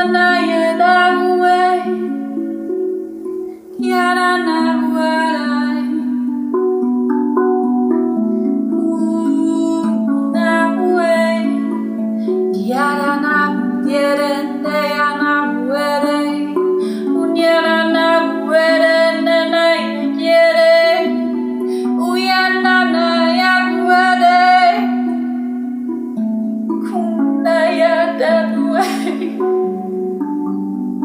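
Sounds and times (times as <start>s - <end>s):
woman singing wordless phrases: 0.0s - 2.3s, 3.8s - 6.2s, 8.8s - 11.9s, 12.5s - 25.4s, 26.8s - 29.8s
steel tongue drum ringing: 0.0s - 31.0s.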